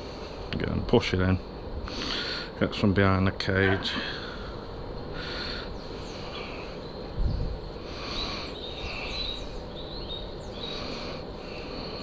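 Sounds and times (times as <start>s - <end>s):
low background hum: 0.0s - 12.0s
birds chirping: 3.3s - 12.0s.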